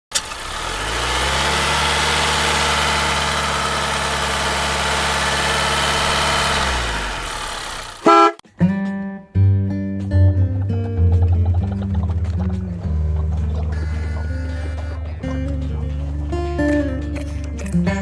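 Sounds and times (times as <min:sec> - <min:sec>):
car engine idling: 0:00.1 - 0:08.4, 0:10.8 - 0:18.0
brief loud tone: 0:08.0 - 0:08.4.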